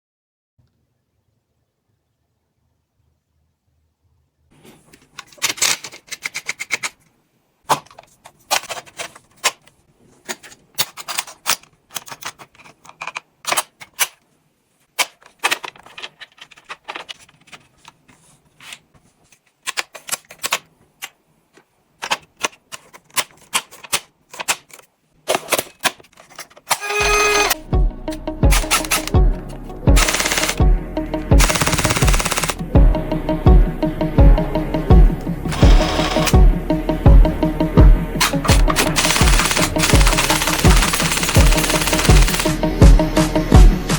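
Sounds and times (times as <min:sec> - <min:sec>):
toy blaster clicks and rattles: 0:26.6 - 0:27.6, 0:28.5 - 0:29.2, 0:30.0 - 0:30.6, 0:31.4 - 0:32.6, 0:35.5 - 0:36.4, 0:38.2 - 0:42.6.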